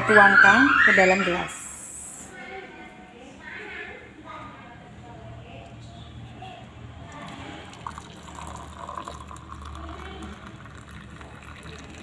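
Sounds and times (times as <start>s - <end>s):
liquid pouring into a glass: 7.1s - 12.0s.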